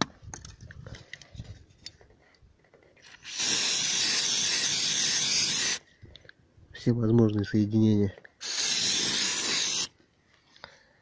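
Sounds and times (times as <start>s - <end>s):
aerosol spray hissing: 3.2s - 5.8s, 8.4s - 9.9s.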